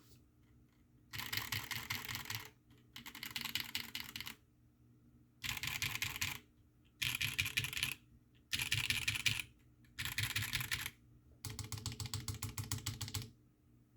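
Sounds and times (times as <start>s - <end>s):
mechanical keyboard typing: 1.1s - 4.4s, 5.4s - 6.4s, 7.0s - 13.3s.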